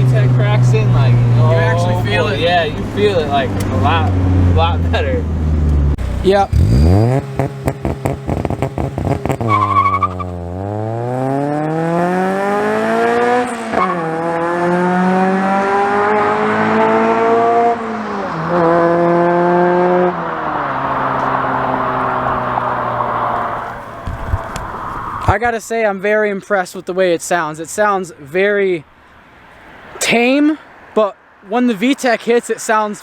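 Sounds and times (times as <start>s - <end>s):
car engine revving hard: 0.0s - 25.3s.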